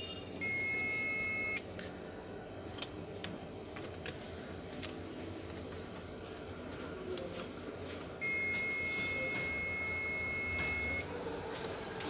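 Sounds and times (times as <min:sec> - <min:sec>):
multimeter continuity beep: 0:00.0 - 0:01.7, 0:08.2 - 0:11.1.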